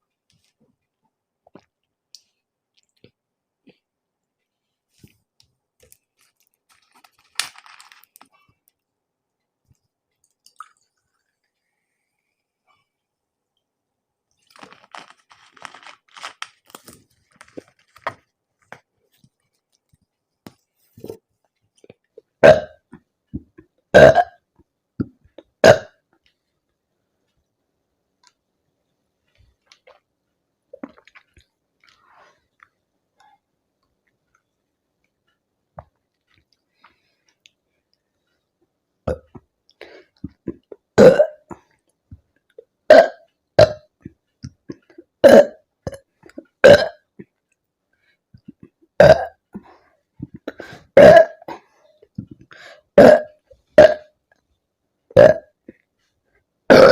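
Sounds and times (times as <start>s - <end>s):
woman burping: 22.4s - 22.8s, 23.9s - 24.4s, 25.6s - 26.0s, 41.0s - 41.6s, 42.9s - 43.9s, 45.2s - 46.0s, 46.6s - 47.0s, 49.0s - 49.4s, 50.3s - 51.6s, 53.0s - 54.1s, 55.1s - 55.5s, 56.7s - 56.9s.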